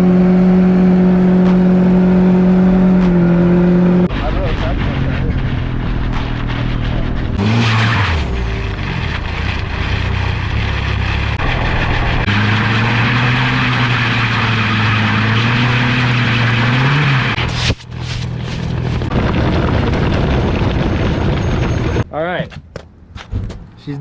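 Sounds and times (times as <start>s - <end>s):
engine revving high: 0.0s - 17.6s
tires squealing: 4.1s - 17.7s.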